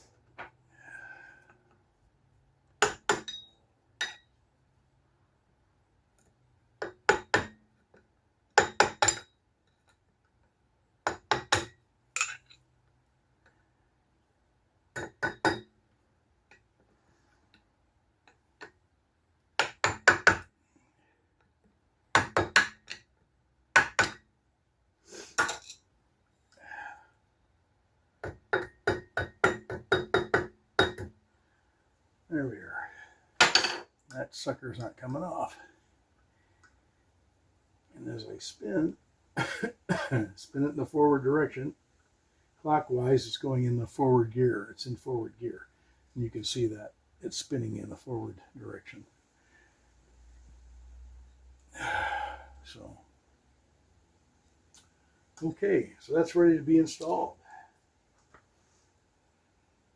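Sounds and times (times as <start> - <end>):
hand tools tapping metal: 2.8 - 4.3.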